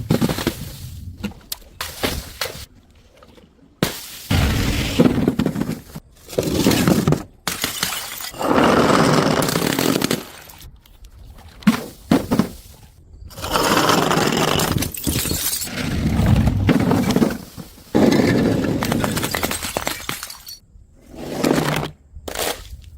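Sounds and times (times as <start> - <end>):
glass bottles shattering: 7.5 - 8.4, 14.8 - 15.7, 18.8 - 20.6.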